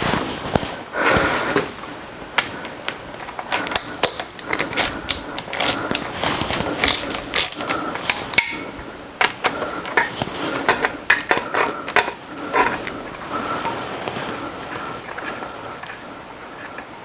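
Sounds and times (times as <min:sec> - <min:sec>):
hand ratchet clicking: 0:03.2 - 0:08.6, 0:09.2 - 0:12.8.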